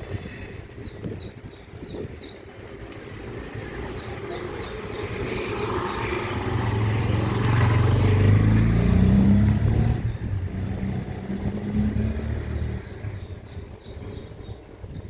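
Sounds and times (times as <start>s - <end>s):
small birds chirping: 0.6s - 8.4s, 9.0s - 15.0s
vehicle engine passing by: 3.2s - 14.5s.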